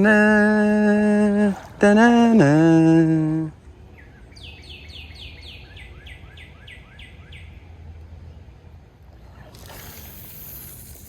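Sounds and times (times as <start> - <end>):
songbird whistling: 4.0 - 7.6
broad hiss: 9.3 - 11.0.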